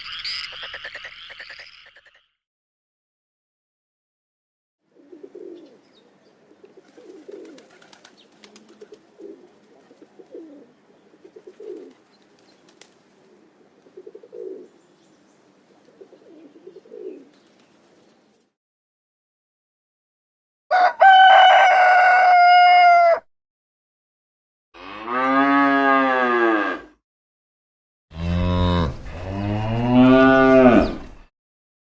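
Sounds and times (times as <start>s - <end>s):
pigeon cooing: 4.9s - 14.8s, 15.8s - 17.4s.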